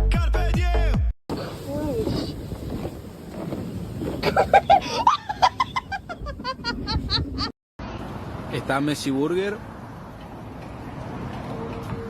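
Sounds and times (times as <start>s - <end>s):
laughter in bursts: 4.2s - 7.5s.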